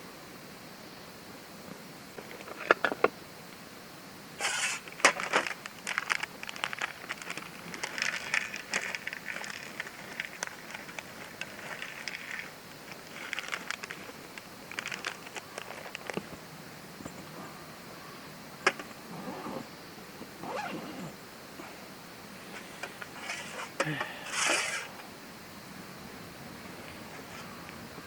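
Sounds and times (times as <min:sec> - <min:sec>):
rustling and scraping: 0:04.4 - 0:16.4, 0:22.4 - 0:24.9, 0:26.6 - 0:27.7.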